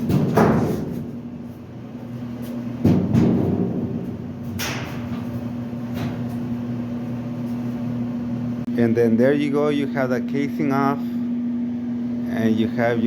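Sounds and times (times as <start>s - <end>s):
metal cabinet clunk: 0.0s - 1.2s
steady low hum: 0.0s - 13.0s.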